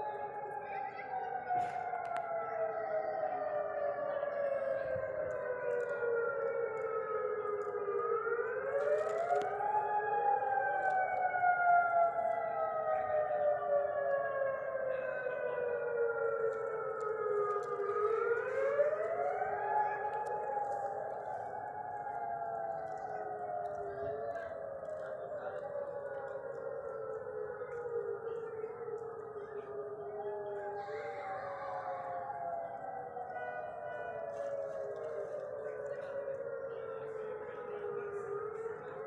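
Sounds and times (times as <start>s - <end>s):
air-raid sirens wailing: 0.0s - 39.0s.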